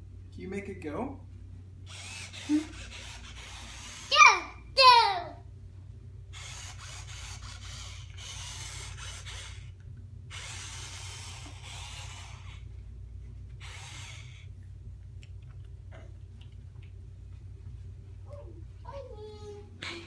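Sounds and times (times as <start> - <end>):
toy truck motor whirring: 1.9 - 4.4, 6.3 - 12.7, 13.6 - 14.5.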